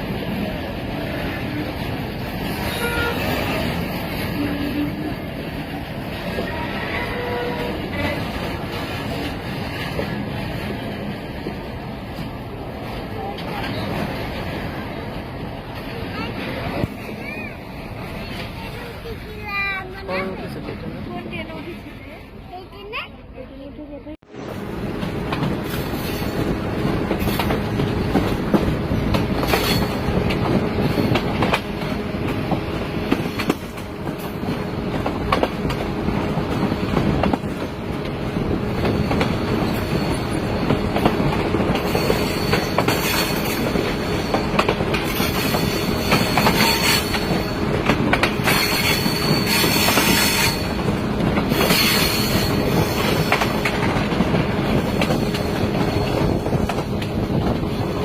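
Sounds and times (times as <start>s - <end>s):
train rumble: 0.0s - 58.0s
wheels clacking over rail joints: 25.0s - 58.0s
high-pitched wheel squeal: 48.5s - 50.8s.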